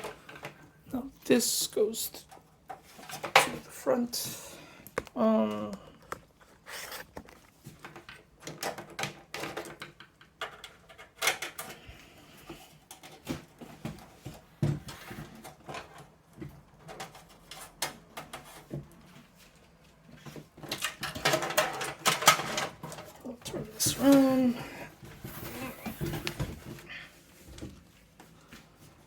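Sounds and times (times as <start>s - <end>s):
clicks and taps of computer case parts: 7.3s - 11.8s, 20.6s - 23.1s.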